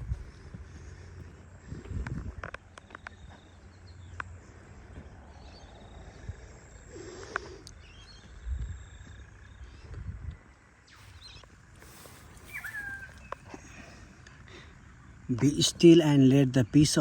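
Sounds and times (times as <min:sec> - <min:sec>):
wind rumble: 0:00.0 - 0:03.3, 0:07.8 - 0:14.0
bird calls and chirps: 0:07.7 - 0:17.0.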